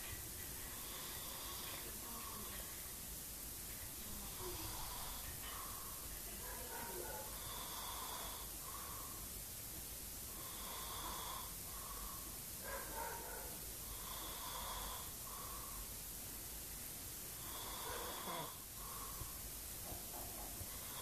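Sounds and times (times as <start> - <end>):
man snoring: 0.7 - 2.5, 4.2 - 5.3, 7.3 - 9.1, 10.3 - 12.2, 13.8 - 15.8, 17.4 - 19.3, 20.7 - 21.0.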